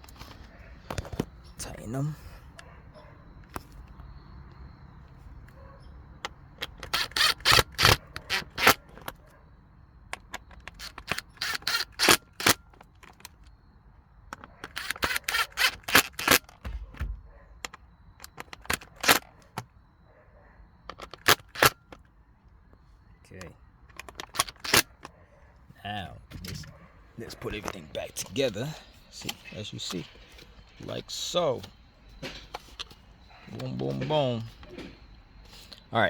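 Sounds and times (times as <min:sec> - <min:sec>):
handling noise: 0:00.0 - 0:09.4, 0:14.3 - 0:19.8, 0:22.7 - 0:35.8
rapid clicks of screws tightening: 0:06.6 - 0:09.2, 0:10.2 - 0:13.4, 0:14.4 - 0:16.6, 0:23.9 - 0:24.9.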